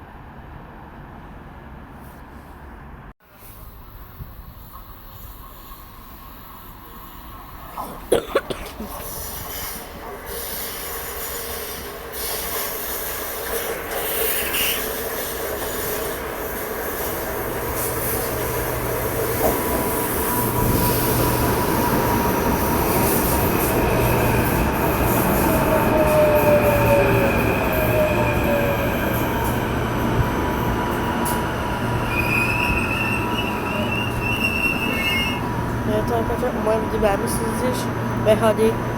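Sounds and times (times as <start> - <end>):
train passing through station: 0.0 - 38.9
steel wheel squeal: 31.9 - 35.5.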